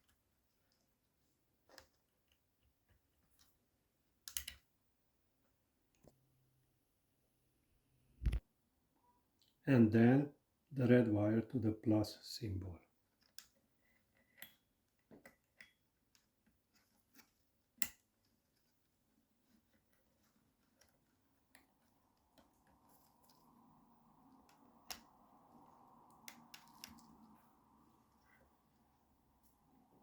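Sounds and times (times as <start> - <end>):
small parts clicking and tapping: 4.2 - 4.6
faint rustle of handling: 16.2 - 30.0.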